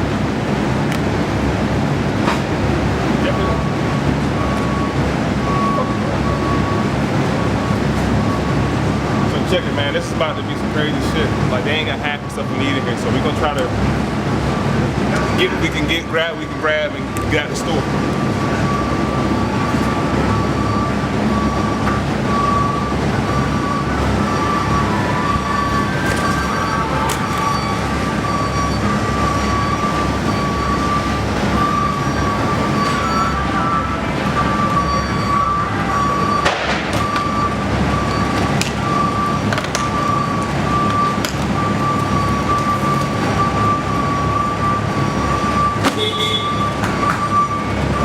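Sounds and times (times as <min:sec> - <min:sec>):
high electronic tone: 0:15.1 - 0:48.0.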